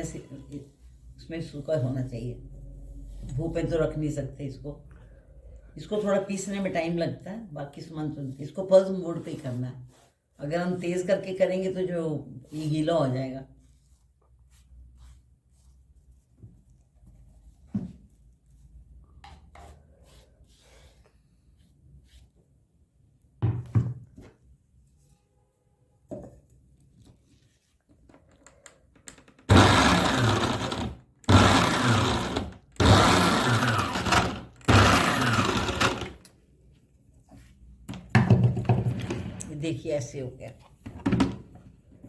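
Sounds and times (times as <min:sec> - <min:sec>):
electric mixer grinder grinding: 0:29.5 - 0:36.2.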